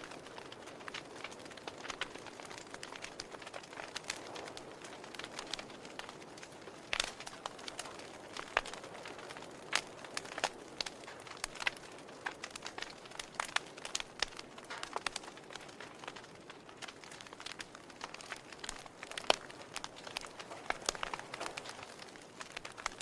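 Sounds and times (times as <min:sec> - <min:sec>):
wood fire crackling and popping: 0:00.0 - 0:23.0.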